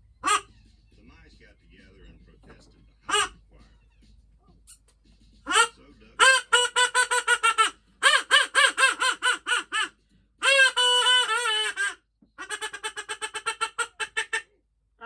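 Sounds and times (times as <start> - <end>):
duck quacking: 0.2 - 0.6, 3.1 - 3.4, 5.4 - 14.5.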